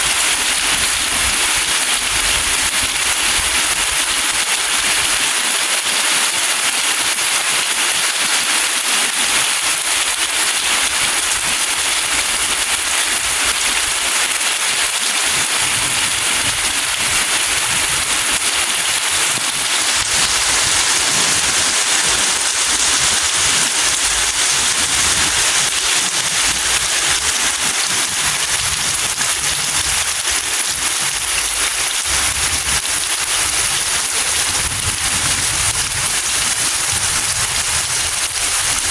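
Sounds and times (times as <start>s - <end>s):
steady rain patter: 0.0s - 38.9s.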